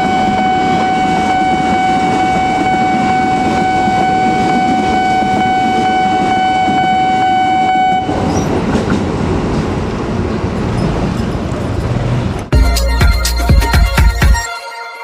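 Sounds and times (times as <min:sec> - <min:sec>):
train horn blast: 0:00.0 - 0:08.3
train rumbling over rails: 0:00.0 - 0:12.6
loud music: 0:12.5 - 0:15.0.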